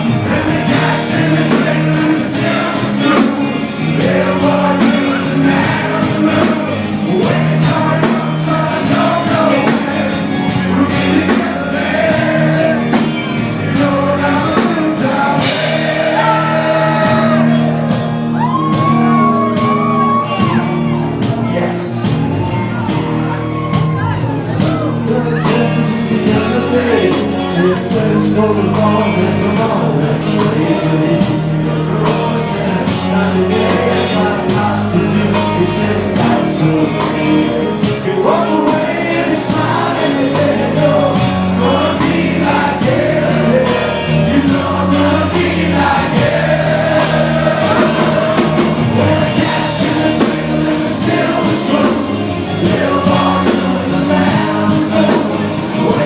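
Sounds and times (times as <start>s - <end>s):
lead vocal singing: 0.0s - 56.0s
live rock band: 0.0s - 56.0s
steady drum beat: 0.0s - 56.0s.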